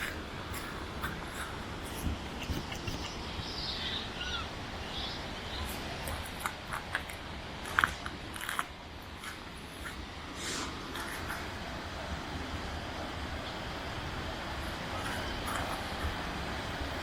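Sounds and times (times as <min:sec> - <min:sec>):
steady low hum: 0:00.0 - 0:17.0
high gliding animal calls: 0:02.7 - 0:05.8.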